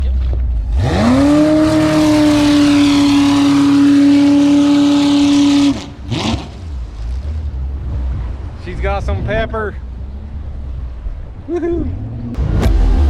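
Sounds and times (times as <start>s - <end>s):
engine revving up: 0.7s - 8.2s, 11.9s - 13.0s
boat engine at high revs: 0.7s - 9.2s.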